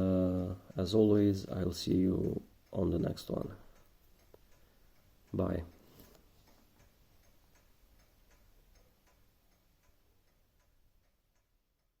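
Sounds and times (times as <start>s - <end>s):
faint regular ticking: 0.0s - 12.0s
low room hiss: 0.0s - 12.0s.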